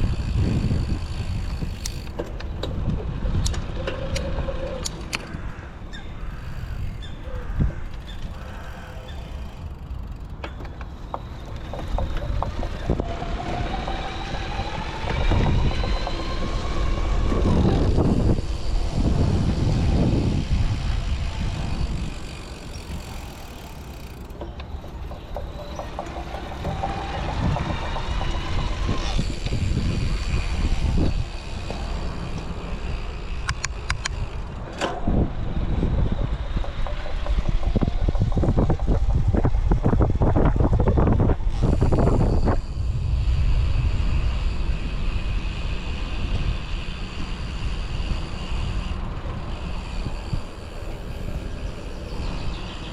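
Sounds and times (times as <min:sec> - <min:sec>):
electric bike motor whining: 0:00.0 - 0:52.9
wind and road noise: 0:00.0 - 0:52.9
sharp clicks or rattles: 0:33.4 - 0:35.2.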